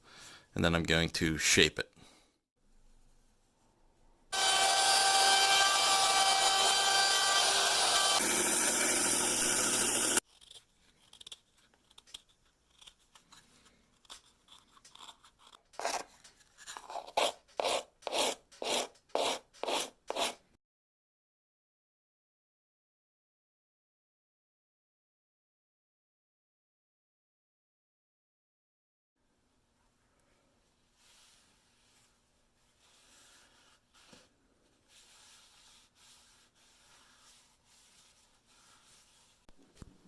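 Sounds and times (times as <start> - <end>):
power tool on wood: 4.3 - 10.2
hand strokes rasping on wood: 34.9 - 39.5.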